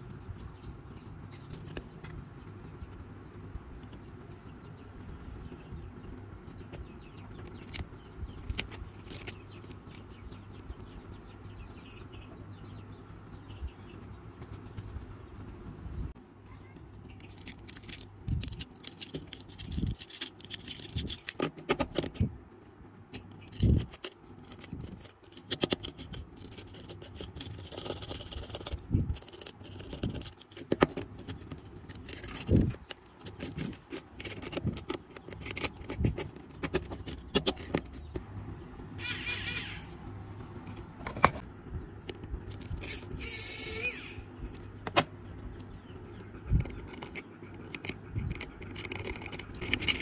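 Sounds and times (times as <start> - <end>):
hand tools scraping and clicking: 7.4 - 10.2, 17.2 - 22.2, 23.1 - 38.2, 45.6 - 50.0.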